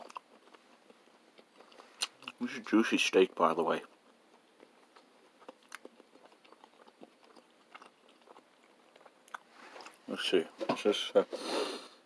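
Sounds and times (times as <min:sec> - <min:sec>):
chewing: 0:00.0 - 0:02.8, 0:03.7 - 0:10.0.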